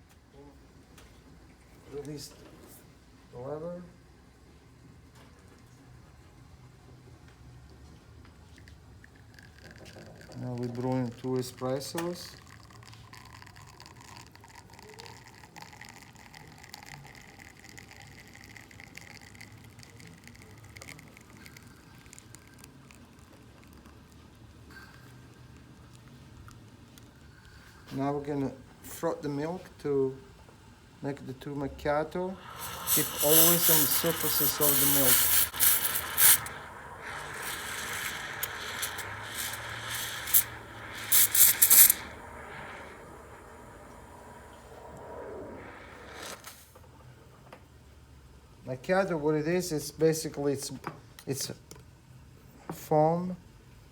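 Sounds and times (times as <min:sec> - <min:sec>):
espresso trickling into cups: 0:08.3 - 0:47.5
steam wand frothing milk: 0:31.1 - 0:46.7.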